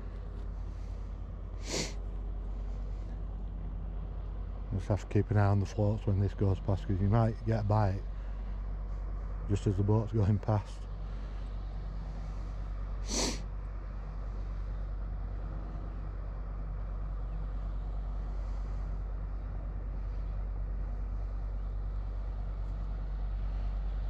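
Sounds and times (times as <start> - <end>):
boat engine droning: 0.0 - 24.0
short sniff: 1.6 - 2.0, 13.0 - 13.5.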